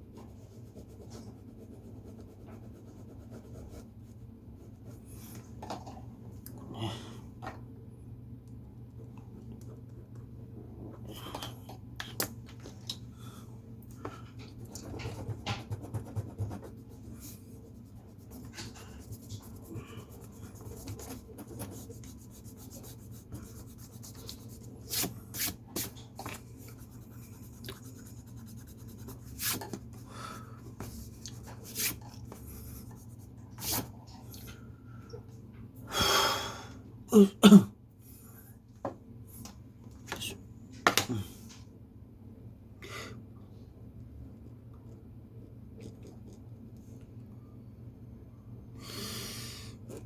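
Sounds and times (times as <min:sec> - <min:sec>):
pencil scratching on paper: 0:00.2 - 0:05.1, 0:14.7 - 0:25.9, 0:26.6 - 0:30.0
person coughing: 0:37.1 - 0:37.8.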